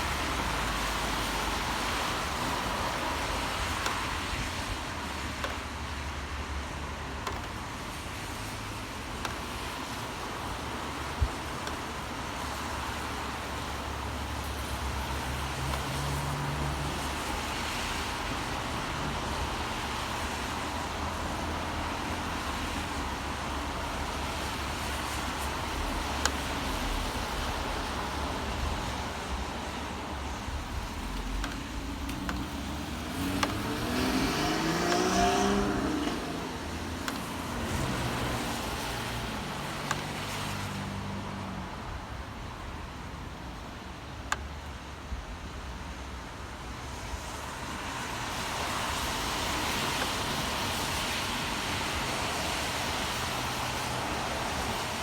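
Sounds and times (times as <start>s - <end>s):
steady road noise: 0.0s - 55.0s
low engine hum: 13.2s - 42.9s
vehicle engine accelerating: 30.3s - 41.6s.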